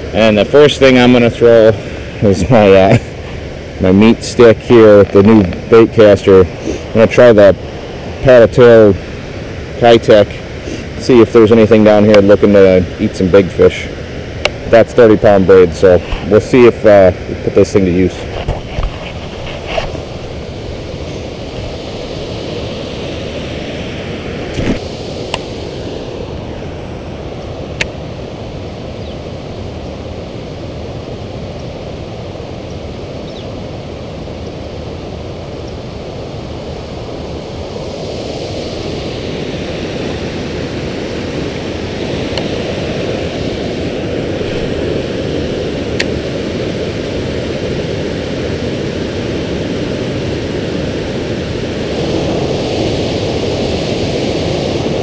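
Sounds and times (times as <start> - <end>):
water rushing over spillway: 19.2 - 55.0.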